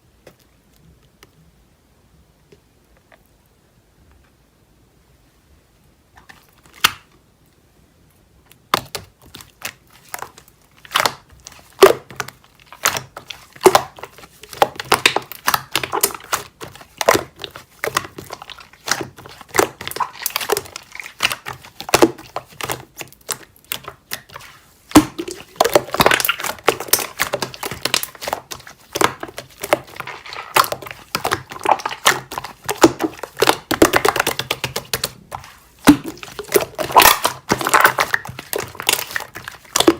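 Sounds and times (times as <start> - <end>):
hands squishing slime: 8.5 - 39.9.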